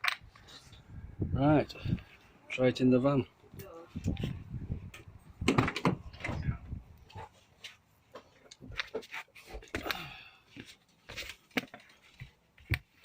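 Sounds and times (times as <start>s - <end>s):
handling knocks and clunks: 4.9s - 7.4s.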